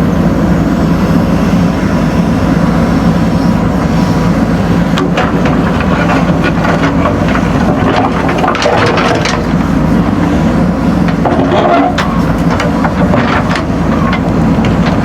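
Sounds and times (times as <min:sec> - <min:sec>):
diesel engine running under load: 0:00.0 - 0:15.0
knocks and clatter: 0:04.9 - 0:09.7, 0:11.0 - 0:15.0.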